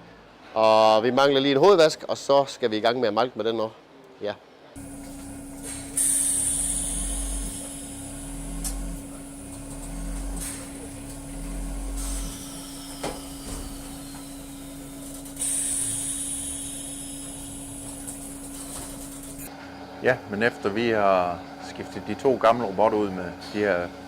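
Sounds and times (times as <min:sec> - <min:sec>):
machinery humming with low pulse: 0:04.8 - 0:20.3.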